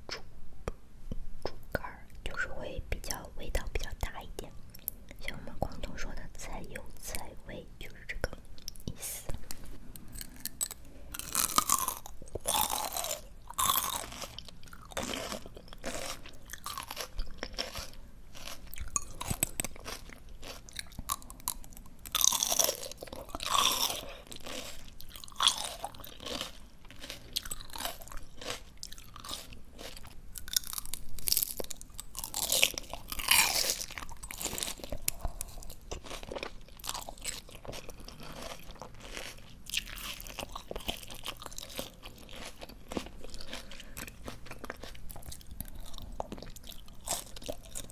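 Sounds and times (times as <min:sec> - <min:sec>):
wet crunchy chewing: 0:09.4 - 0:47.9.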